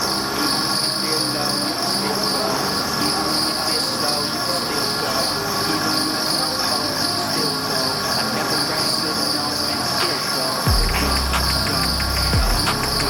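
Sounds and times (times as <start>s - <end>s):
high-pitched chirring: 0.0s - 13.0s
music with held shifting notes: 10.7s - 13.0s.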